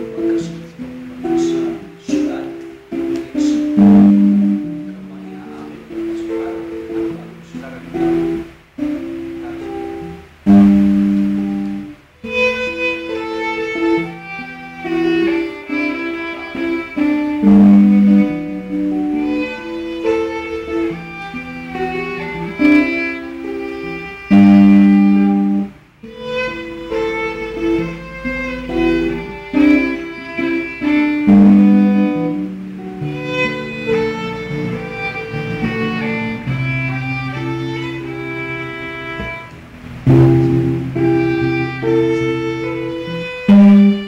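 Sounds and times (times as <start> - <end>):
plucked guitar: 0.0 - 44.0
violin melody: 0.0 - 44.0.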